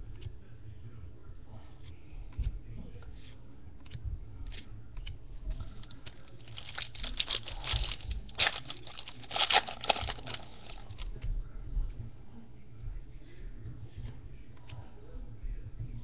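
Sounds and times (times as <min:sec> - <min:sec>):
foil wrapper crinkling and tearing: 0:06.4 - 0:11.0.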